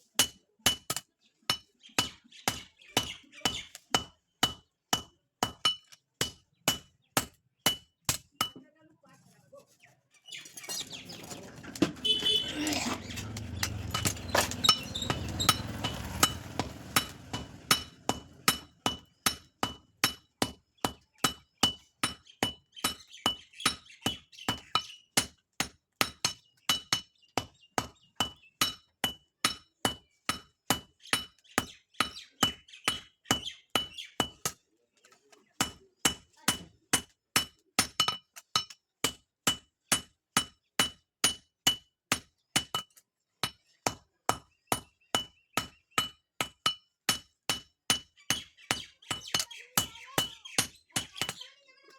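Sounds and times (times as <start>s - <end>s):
hammer striking metal on anvil: 13.2s - 20.6s.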